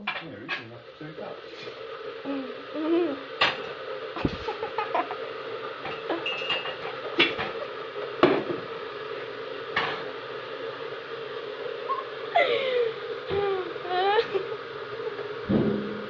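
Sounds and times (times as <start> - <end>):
steady hum: 0.0 - 16.0
cups and kitchenware clinking: 5.8 - 7.6.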